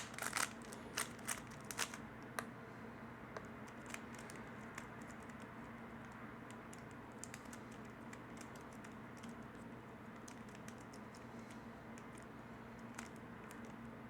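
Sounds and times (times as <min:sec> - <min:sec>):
plastic puzzle cube clicking: 0:00.0 - 0:02.0
low steady hum: 0:00.0 - 0:14.0.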